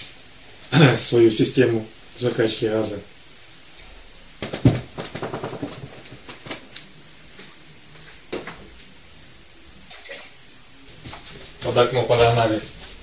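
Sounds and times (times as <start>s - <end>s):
knocking and clatter: 4.4s - 6.6s.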